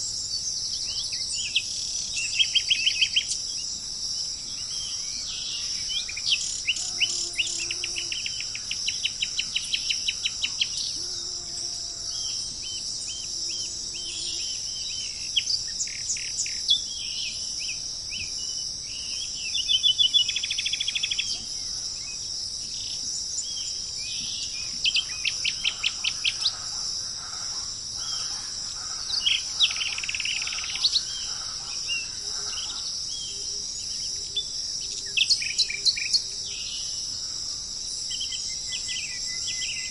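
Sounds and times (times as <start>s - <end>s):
high-pitched insect drone: 0.0s - 39.9s
birds calling: 19.6s - 33.5s.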